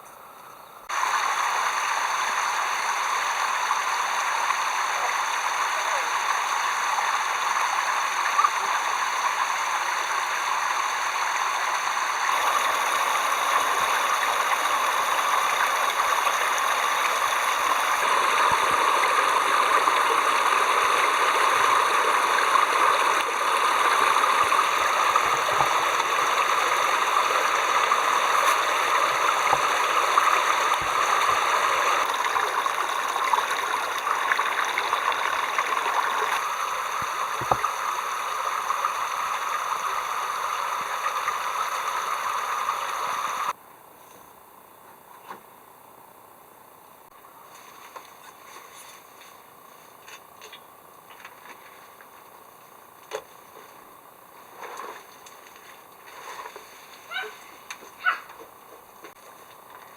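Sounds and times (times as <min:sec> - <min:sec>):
water running: 0:00.9 - 0:43.6.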